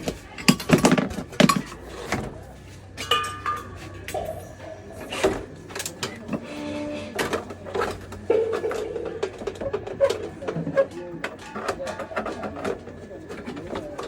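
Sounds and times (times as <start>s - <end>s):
metal knocking and clinking: 3.0s - 6.6s.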